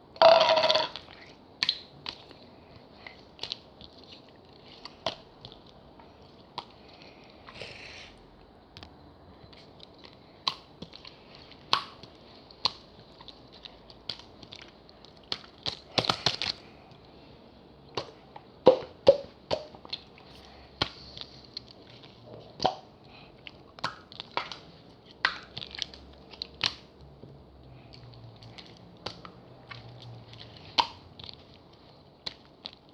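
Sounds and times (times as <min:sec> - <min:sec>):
slime popping and squelching: 0:00.2 - 0:02.3.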